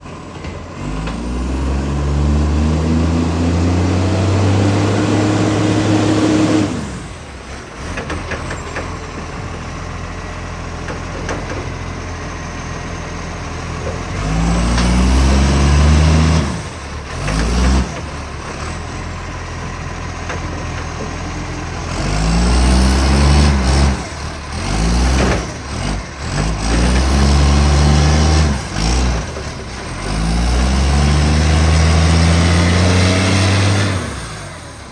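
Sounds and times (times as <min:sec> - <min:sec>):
diesel truck engine revving: 0:00.1 - 0:34.9.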